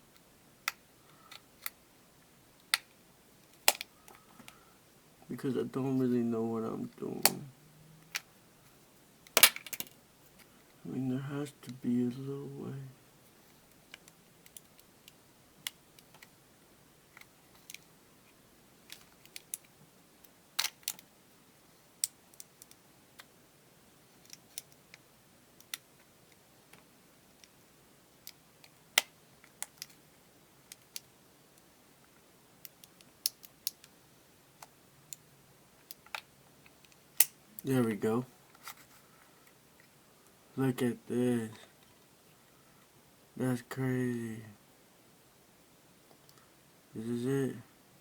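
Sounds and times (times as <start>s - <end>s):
plastic parts clicking and snapping: 2.6s - 4.6s, 9.2s - 10.0s, 13.8s - 16.3s, 18.8s - 21.1s, 28.2s - 30.0s, 30.7s - 31.1s.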